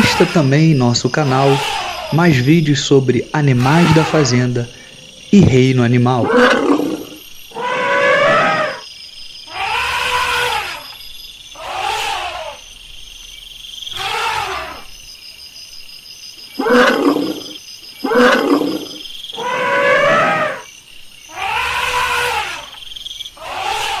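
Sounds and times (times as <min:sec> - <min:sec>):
elephant trumpeting: 0:00.0 - 0:02.5, 0:03.5 - 0:04.6, 0:06.2 - 0:08.8, 0:09.5 - 0:10.9, 0:11.6 - 0:12.6, 0:13.9 - 0:14.9, 0:16.6 - 0:20.6, 0:21.3 - 0:22.8, 0:23.4 - 0:24.0.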